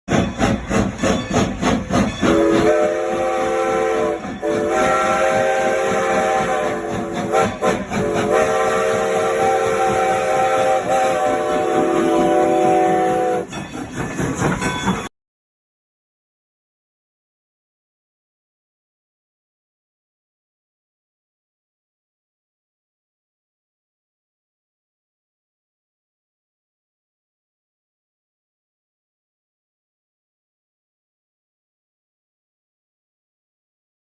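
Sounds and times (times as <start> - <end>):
train wheels clattering on rails: 0.1 - 15.1
train horn multi-tone chord: 2.3 - 13.5.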